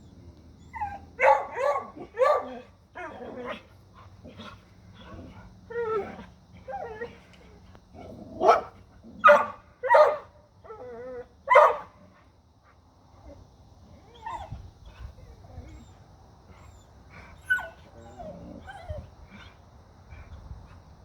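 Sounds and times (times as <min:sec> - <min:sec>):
dogs barking: 0:01.2 - 0:02.6, 0:08.4 - 0:10.2, 0:11.5 - 0:11.9
dog whining: 0:17.4 - 0:19.0
dog whimpers and yips: 0:17.4 - 0:19.1.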